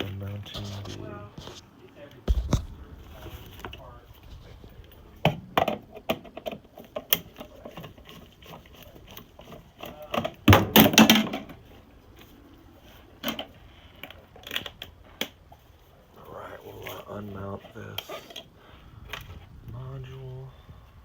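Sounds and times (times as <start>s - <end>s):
rattling and scraping: 2.3s - 11.8s.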